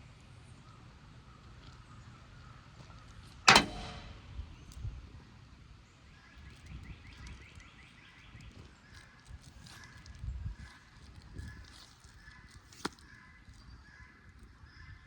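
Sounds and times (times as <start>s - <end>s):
sudden loud hit: 3.5s - 4.4s.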